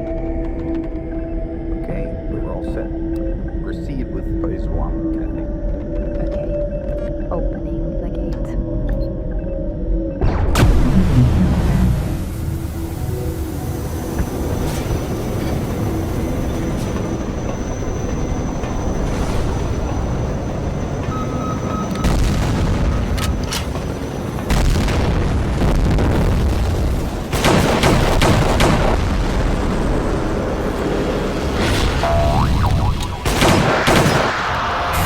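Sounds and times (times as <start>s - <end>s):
background music: 0.0s - 35.0s
heavy booms: 10.2s - 12.9s
gunfire bursts: 27.3s - 29.2s, 33.1s - 34.8s.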